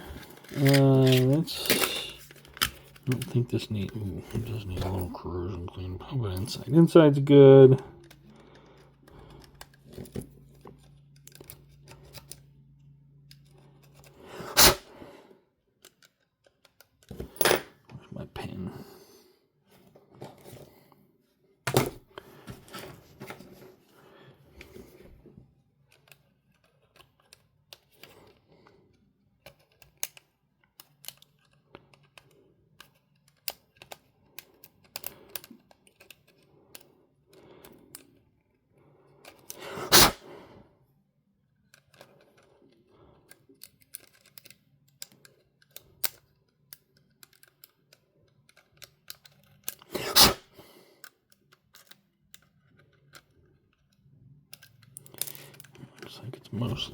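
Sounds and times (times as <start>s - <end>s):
pen tool clicking and scratching: 39.4s - 40.2s, 45.0s - 50.5s.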